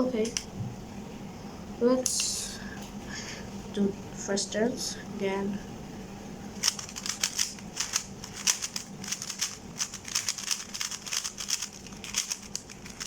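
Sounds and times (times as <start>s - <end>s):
speed cube clicking: 6.6s - 13.0s.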